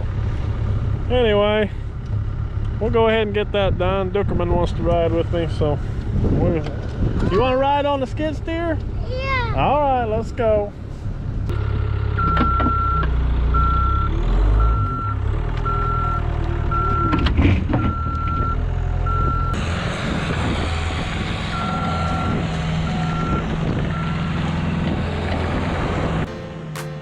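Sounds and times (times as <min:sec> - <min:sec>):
skid steer engine running: 0:11.5 - 0:26.3.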